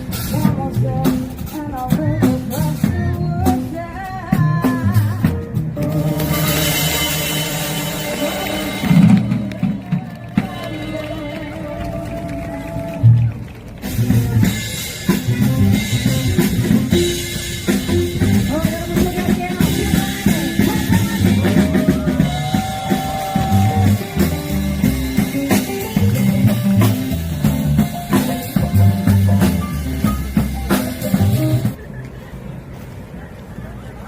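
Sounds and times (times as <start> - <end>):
drum kit: 0.0 - 11.0, 12.8 - 31.8
guitar playing: 15.0 - 31.8.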